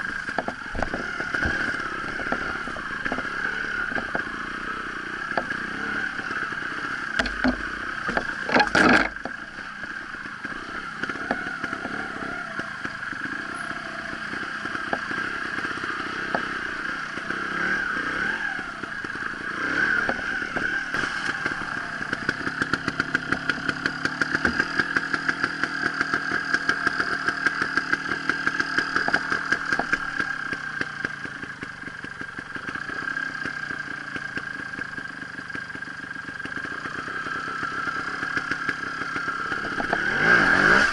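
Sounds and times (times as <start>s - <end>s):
motorcycle engine running: 0.0s - 40.9s
loud clattering knocks: 7.2s - 9.4s.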